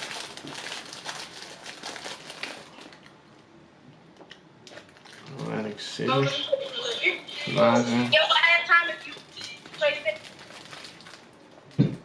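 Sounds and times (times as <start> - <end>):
crinkling rustle with clicks: 0.0 - 3.4, 4.2 - 5.4, 9.0 - 11.8.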